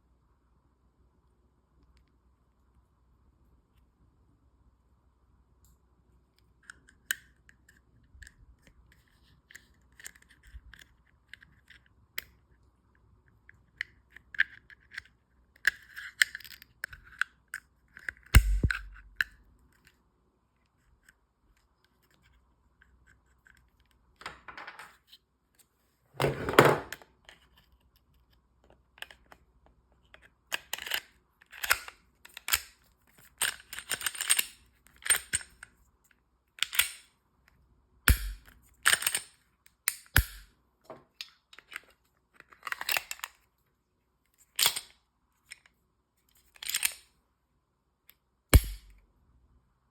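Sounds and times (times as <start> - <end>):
pistol handling clicks and scrapes: 6.4 - 12.5, 13.6 - 20.0, 20.6 - 24.0, 26.9 - 37.2, 38.1 - 40.5, 41.1 - 43.5, 44.3 - 47.2, 48.1 - 49.0.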